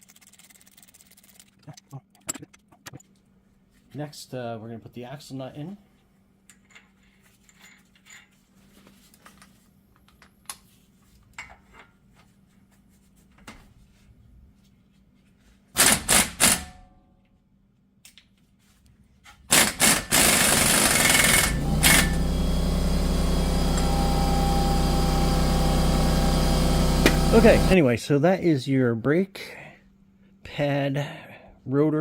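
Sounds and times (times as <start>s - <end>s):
impact wrench bursts: 15.8s - 16.8s, 19.5s - 27.8s
loud machine drone: 19.5s - 27.8s.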